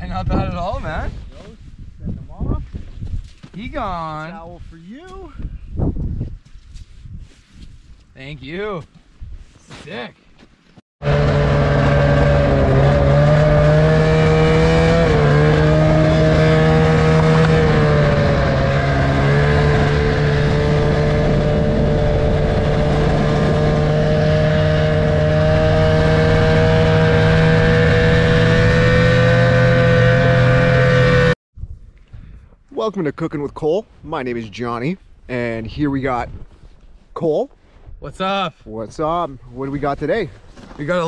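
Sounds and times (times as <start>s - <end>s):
snowmobile engine running: 11.0s - 31.4s.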